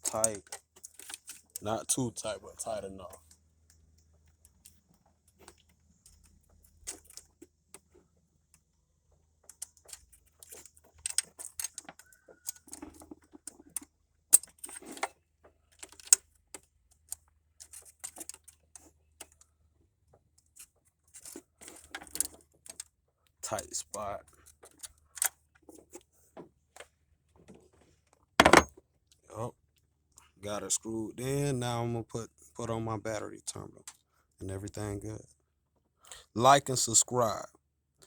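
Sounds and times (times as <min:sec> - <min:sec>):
hand tools clinking on metal: 0:00.0 - 0:03.3.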